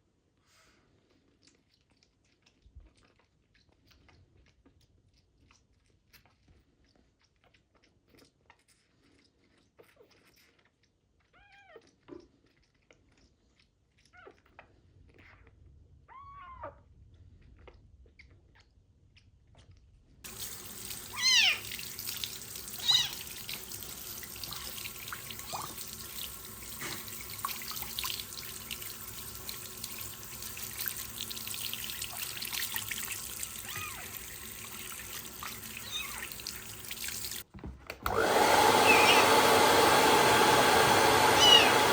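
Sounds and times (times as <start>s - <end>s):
water tap running: 20.3s - 37.5s, 38.1s - 41.9s
kitten meowing: 21.1s - 21.7s, 22.8s - 23.3s, 33.6s - 34.1s, 35.8s - 36.4s, 38.8s - 39.2s, 41.4s - 41.8s.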